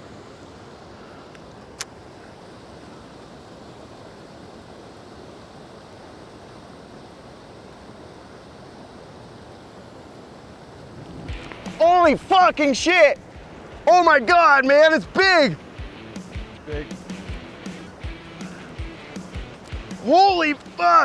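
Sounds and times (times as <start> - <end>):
river water rushing: 0.0 - 21.0
wind on microphone: 10.7 - 13.9.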